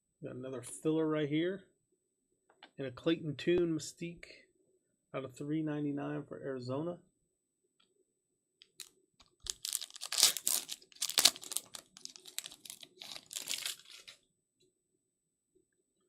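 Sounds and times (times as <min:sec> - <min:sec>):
foil wrapper tearing and crinkling: 0:08.7 - 0:14.2.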